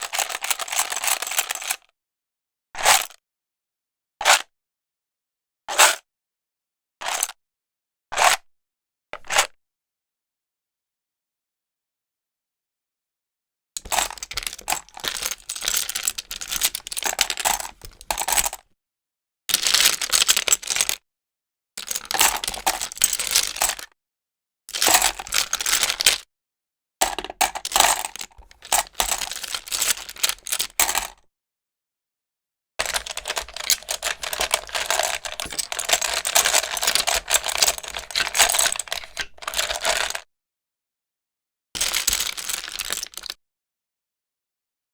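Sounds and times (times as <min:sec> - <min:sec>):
tiles clattering together: 0:13.8 - 0:18.6, 0:21.9 - 0:23.8, 0:27.0 - 0:31.2, 0:32.8 - 0:40.2.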